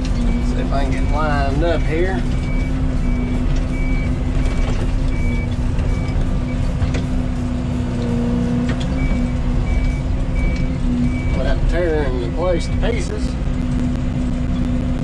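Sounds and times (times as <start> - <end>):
travel alarm beeping: 0.0 - 11.8
excavator diesel engine running: 0.0 - 15.0.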